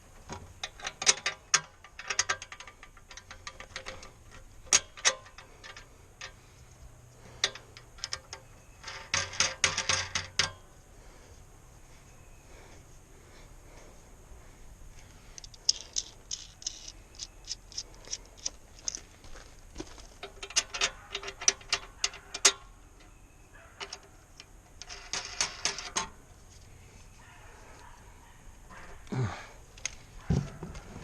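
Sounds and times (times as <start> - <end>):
sharp mechanical clicks and rattles: 0.4 - 10.6, 15.2 - 19.3, 20.1 - 23.2.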